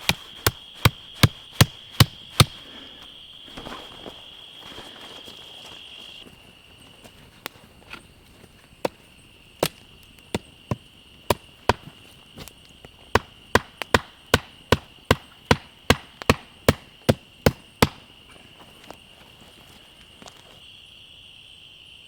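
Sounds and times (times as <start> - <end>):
tool chopping into wood: 0.0 - 2.8, 9.6 - 18.1.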